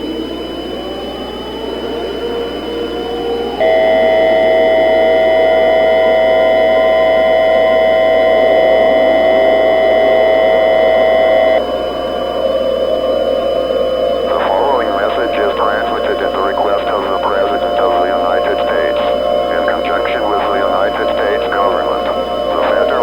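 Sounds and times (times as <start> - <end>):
low droning background: 0.0 - 23.0
two-tone electronic alert signal: 3.6 - 11.6.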